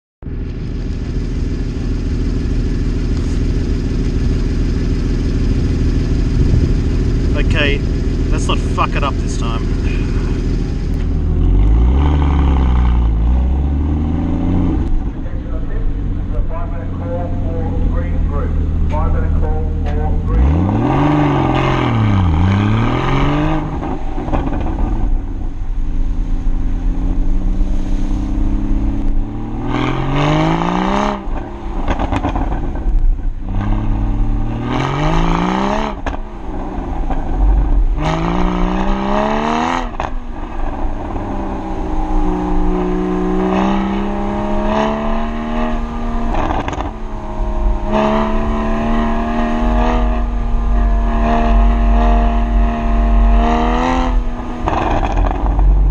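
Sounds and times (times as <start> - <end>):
sports car engine revving: 0.3 - 55.9.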